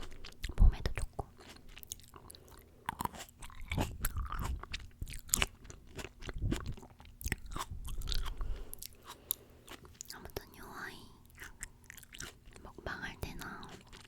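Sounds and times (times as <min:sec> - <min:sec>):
crisp crunching bites: 0:02.9 - 0:10.1.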